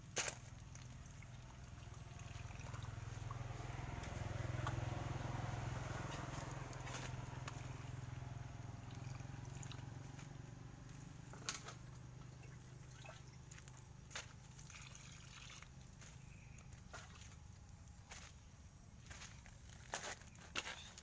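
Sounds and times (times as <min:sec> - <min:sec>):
diesel engine humming: 0:00.0 - 0:14.7, 0:15.6 - 0:20.4.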